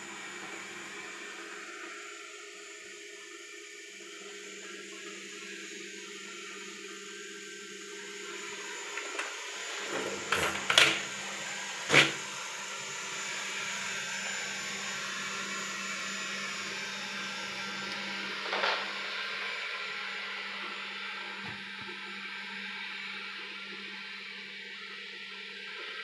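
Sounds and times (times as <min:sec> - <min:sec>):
robot vacuum motor hum: 0:00.0 - 0:23.8.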